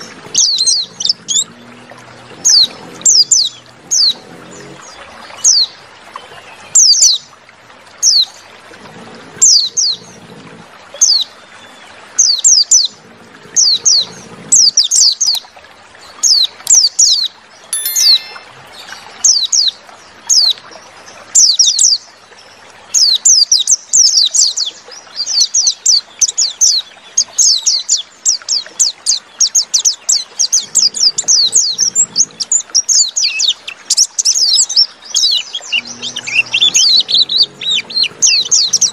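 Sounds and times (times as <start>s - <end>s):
bird chirping: 17.8s - 19.4s.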